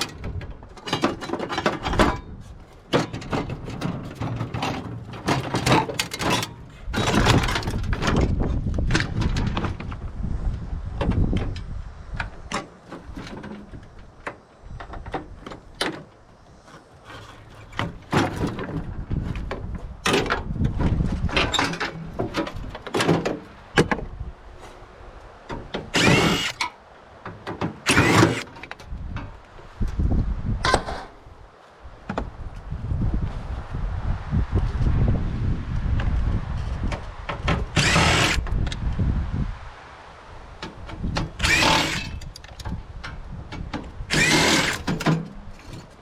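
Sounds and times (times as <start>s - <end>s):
sheet metal clanking and scraping: 0.0s - 8.4s
scraping rattles: 2.9s - 9.8s, 25.8s - 26.7s, 27.6s - 28.8s, 37.4s - 38.5s.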